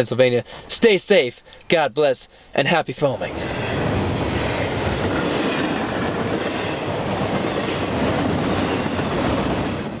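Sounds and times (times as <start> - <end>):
freight train rolling past: 3.2 - 10.0.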